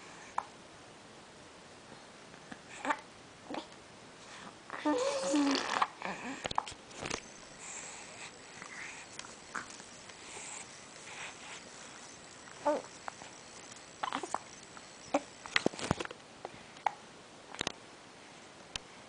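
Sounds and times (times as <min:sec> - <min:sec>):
baby hiccuping: 0:14.0 - 0:14.4.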